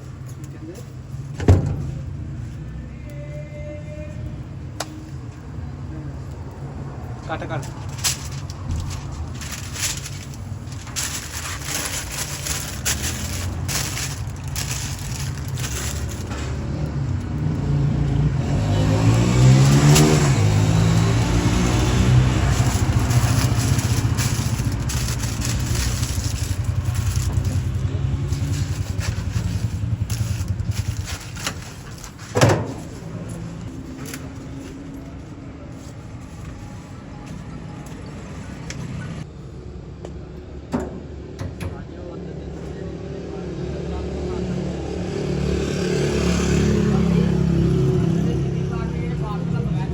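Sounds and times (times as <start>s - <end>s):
street traffic: 0.0s - 49.9s
vehicle passing close: 6.7s - 34.6s, 44.0s - 49.6s
knocks and scrapes: 7.6s - 17.3s, 18.5s - 34.7s.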